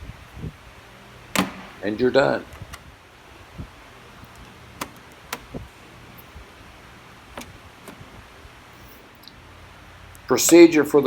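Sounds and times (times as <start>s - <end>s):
low steady hum: 0.0s - 11.0s
door handle clicks and taps: 1.4s - 1.8s, 4.3s - 5.6s.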